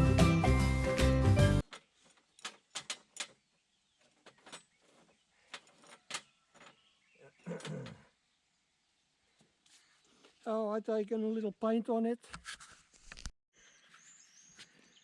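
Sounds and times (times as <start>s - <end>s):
background music: 0.0s - 1.6s.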